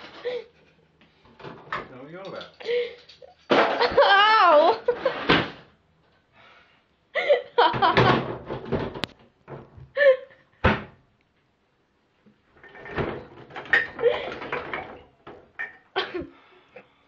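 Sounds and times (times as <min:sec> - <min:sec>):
cupboard doors clattering: 0:07.6 - 0:09.9, 0:12.6 - 0:16.2.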